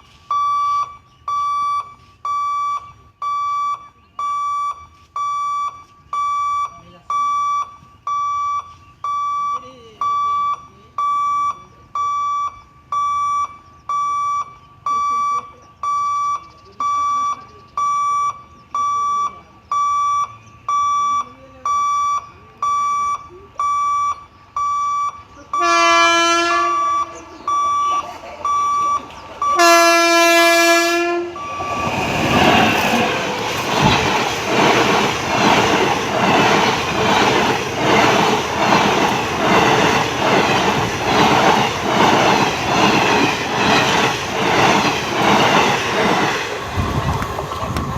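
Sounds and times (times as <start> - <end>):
electronic warning beeper: 0.3 - 46.4
locomotive horn blasts: 25.6 - 27.1, 29.5 - 31.6
train wheels clattering: 31.4 - 47.9.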